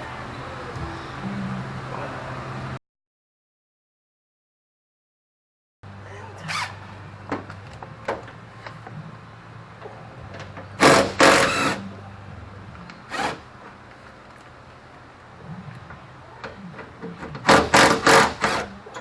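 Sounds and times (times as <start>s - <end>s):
steady low hum: 5.9s - 19.0s.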